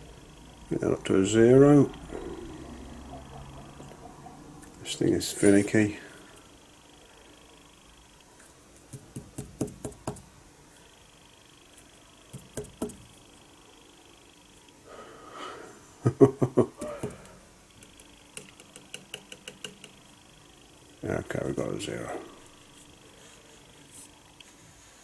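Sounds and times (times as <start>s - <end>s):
small metal clicks and taps: 17.8s - 20.0s.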